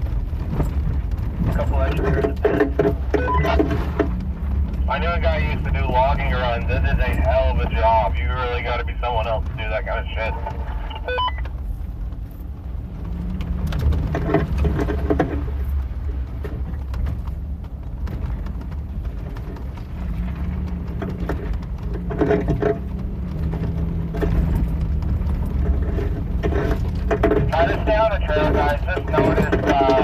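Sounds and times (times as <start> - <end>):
engine and tyre rumble: 0.0 - 30.0
rattling and crunching over dirt: 0.0 - 30.0.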